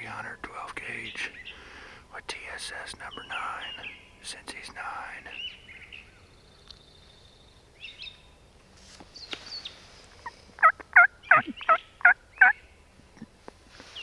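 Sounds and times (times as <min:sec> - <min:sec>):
small birds chirping: 0:00.0 - 0:08.4, 0:09.0 - 0:14.0
turkey yelps: 0:10.6 - 0:12.5.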